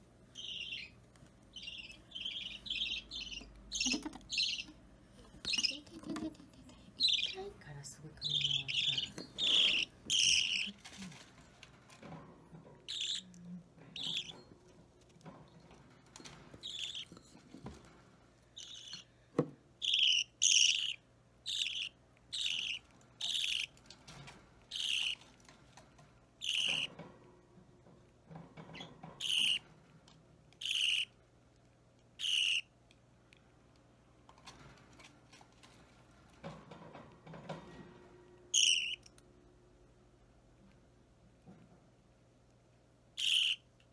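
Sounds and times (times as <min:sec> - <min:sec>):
bird chick begging chirps: 0:00.4 - 0:00.9, 0:01.6 - 0:04.7, 0:08.3 - 0:10.7, 0:16.6 - 0:17.1, 0:19.8 - 0:23.7, 0:24.7 - 0:25.2, 0:26.4 - 0:26.9, 0:29.2 - 0:29.6, 0:30.6 - 0:31.1, 0:32.2 - 0:32.7, 0:38.6 - 0:39.1, 0:43.2 - 0:43.6.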